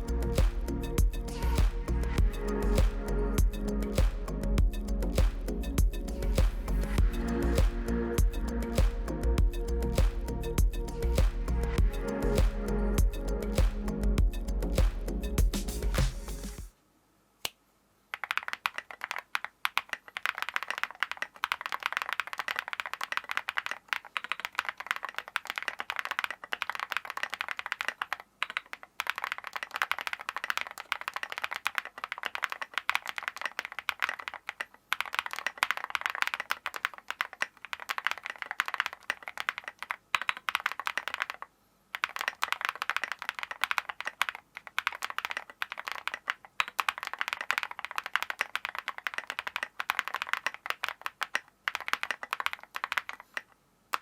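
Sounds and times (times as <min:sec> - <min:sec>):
mechanical keyboard typing: 0:18.2 - 0:54.0.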